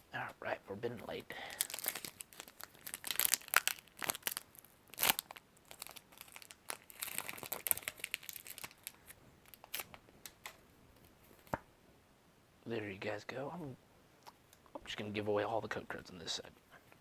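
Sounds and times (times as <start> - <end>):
foil wrapper tearing and crinkling: 1.5 - 9.9.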